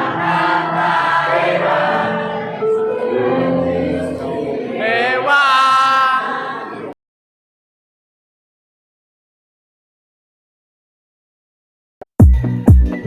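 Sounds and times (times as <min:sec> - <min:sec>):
choir singing: 0:00.0 - 0:07.0.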